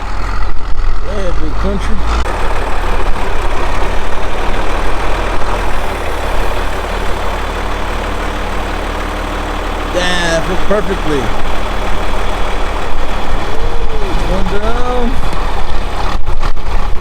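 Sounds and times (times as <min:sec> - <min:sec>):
tractor engine running: 0:00.0 - 0:17.0.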